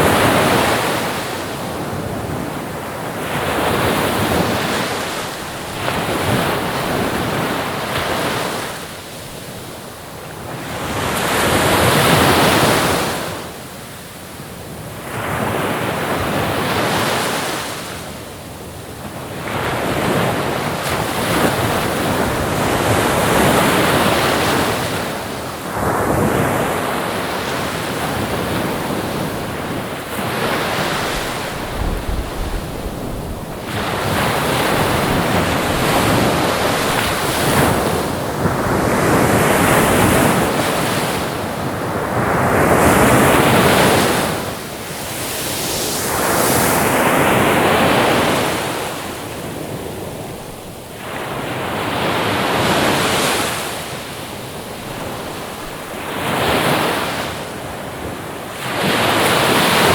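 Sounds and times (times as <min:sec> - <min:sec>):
ocean waves breaking: 0:19.4 - 0:57.8.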